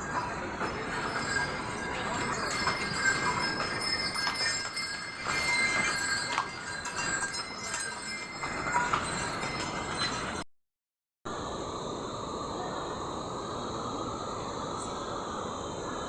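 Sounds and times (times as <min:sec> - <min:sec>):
small bells jingling: 0:00.0 - 0:10.5.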